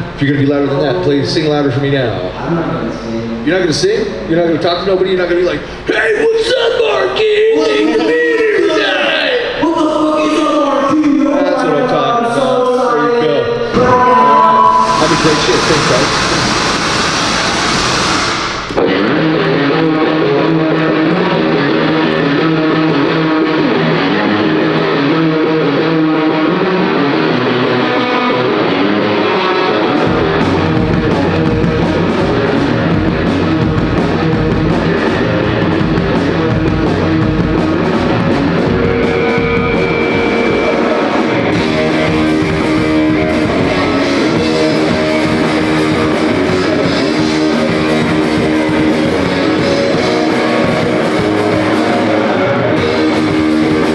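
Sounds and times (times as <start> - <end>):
electric guitar: 13.4 - 53.9
bass guitar: 13.5 - 53.9
drums: 13.6 - 53.9.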